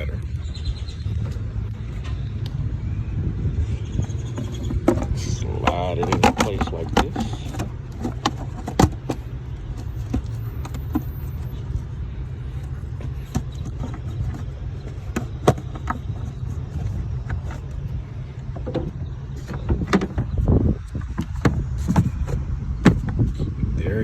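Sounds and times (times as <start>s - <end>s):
steady low rumble: 0.0s - 24.0s
plastic clicks and knocks: 4.6s - 11.0s.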